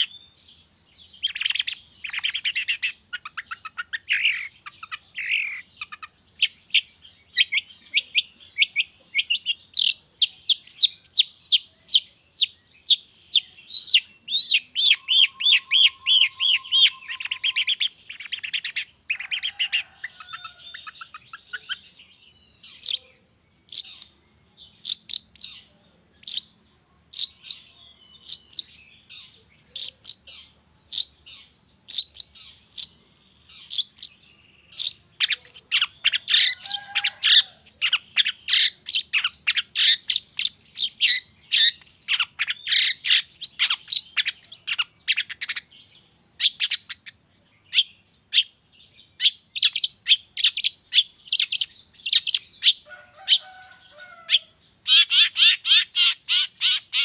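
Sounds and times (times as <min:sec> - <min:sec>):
shrike calling: 0:01.2 - 0:21.9, 0:33.6 - 0:45.7.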